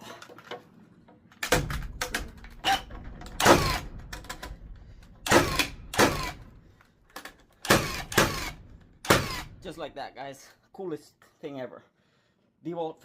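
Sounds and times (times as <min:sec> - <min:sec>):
cordless power tool bursts: 0:03.4 - 0:03.9, 0:05.2 - 0:06.4, 0:07.6 - 0:09.6.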